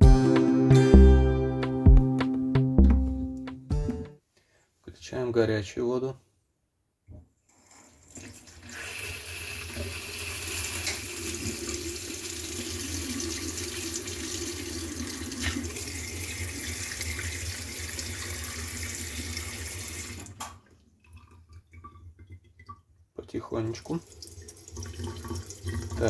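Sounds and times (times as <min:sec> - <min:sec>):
water running from a tap: 0:07.7 - 0:20.5, 0:23.6 - 0:26.0.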